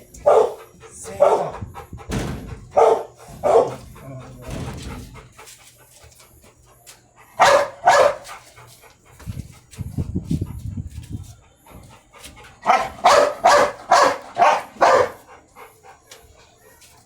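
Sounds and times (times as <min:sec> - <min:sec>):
dog barking: 0:00.2 - 0:01.6, 0:02.7 - 0:03.9, 0:07.4 - 0:08.4, 0:12.6 - 0:15.3.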